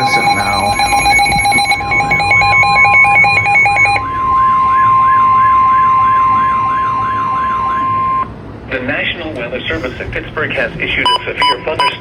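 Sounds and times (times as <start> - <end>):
pulsing beeping alarm: 0.0 - 8.3, 11.0 - 12.0
warbling electronic siren: 0.0 - 8.3
steady warning tone: 0.0 - 8.6, 9.7 - 12.0.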